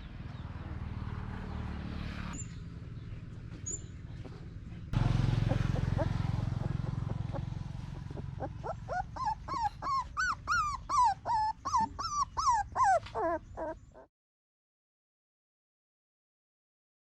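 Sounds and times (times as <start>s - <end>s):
animal whining calls: 5.5s - 14.1s.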